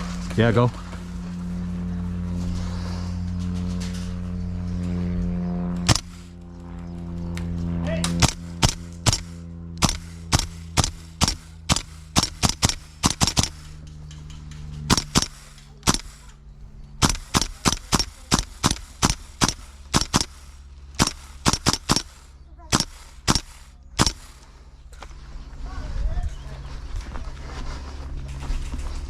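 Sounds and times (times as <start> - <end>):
airsoft rifle shots: 5.8 - 6.3, 8.0 - 13.9, 14.8 - 16.4, 17.0 - 24.6.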